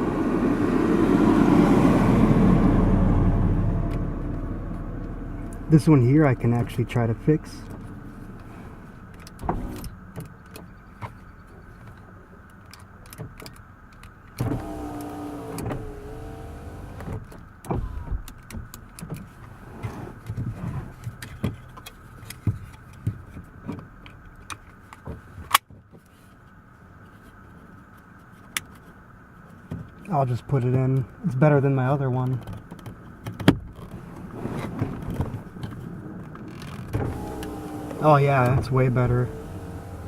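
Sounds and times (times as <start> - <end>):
power window motor: 14.4 - 18.3, 36.8 - 40.0.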